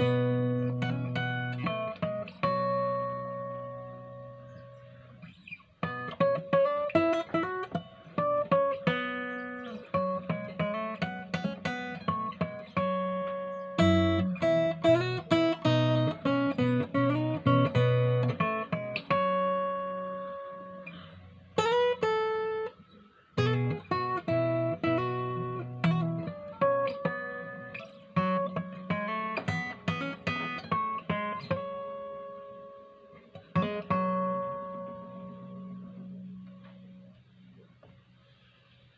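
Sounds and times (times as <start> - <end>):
plucked guitar notes: 0.0 - 38.2
acoustic guitar chords: 0.0 - 38.9.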